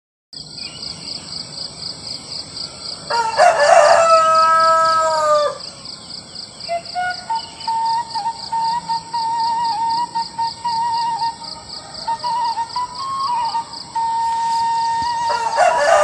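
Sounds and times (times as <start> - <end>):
crickets trilling: 0.4 - 16.0
rooster crowing: 2.9 - 5.7, 11.5 - 12.7, 14.9 - 16.0
held wavering tone: 6.8 - 15.7.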